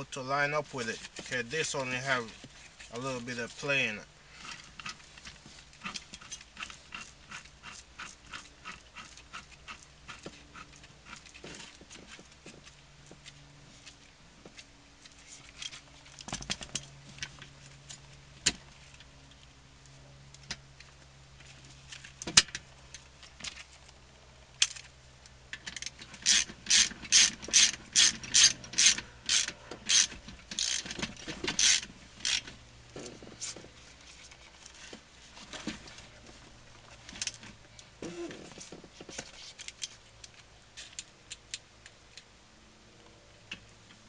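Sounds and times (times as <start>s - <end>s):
hand ratchet clicking: 25.6s - 32.5s.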